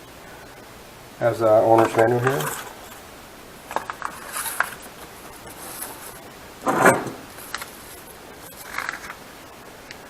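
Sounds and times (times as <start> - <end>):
paper pages rustling: 1.7 - 3.0, 3.7 - 6.3, 7.3 - 9.2.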